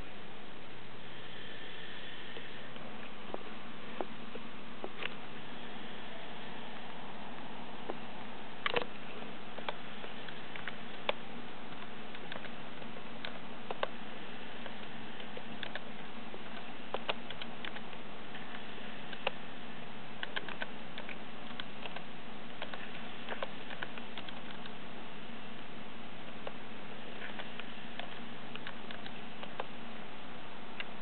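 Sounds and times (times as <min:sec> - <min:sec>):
faint low hum: 0:00.0 - 0:31.0
steady hiss: 0:00.0 - 0:31.0
soft clicks: 0:14.6 - 0:19.4, 0:20.2 - 0:24.8, 0:27.2 - 0:29.8.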